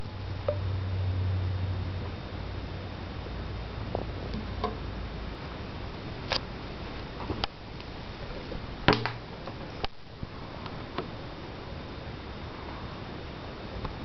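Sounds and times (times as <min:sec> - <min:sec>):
static hiss: 0:00.0 - 0:14.0.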